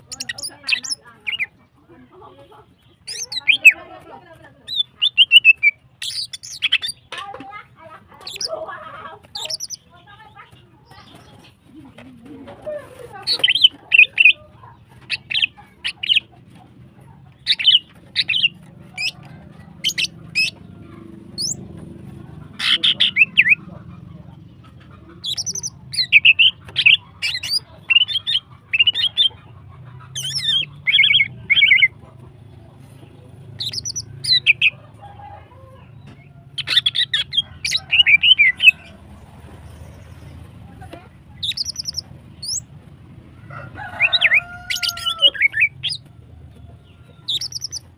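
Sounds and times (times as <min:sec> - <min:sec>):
bird chirping: 0:00.0 - 0:01.6, 0:02.3 - 0:03.8, 0:04.6 - 0:07.1, 0:09.3 - 0:09.9, 0:13.3 - 0:16.3, 0:17.4 - 0:21.8, 0:22.5 - 0:32.0, 0:33.5 - 0:34.8, 0:36.1 - 0:42.8, 0:46.8 - 0:47.9.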